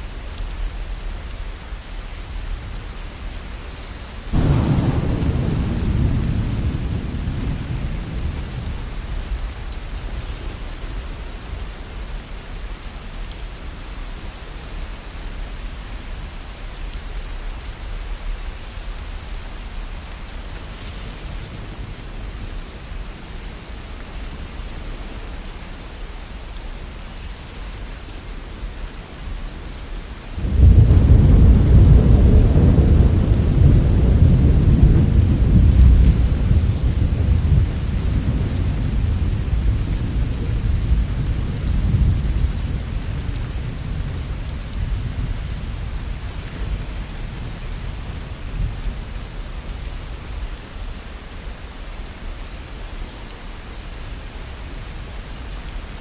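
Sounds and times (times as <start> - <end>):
heavy rain: 0.0 - 56.0
deep thunder rumbling: 4.3 - 10.1, 30.4 - 46.8.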